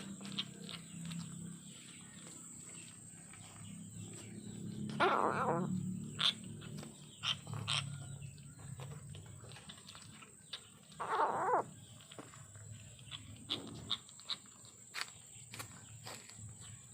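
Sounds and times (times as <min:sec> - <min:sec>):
kitten growling: 0:04.9 - 0:06.3, 0:11.0 - 0:11.7.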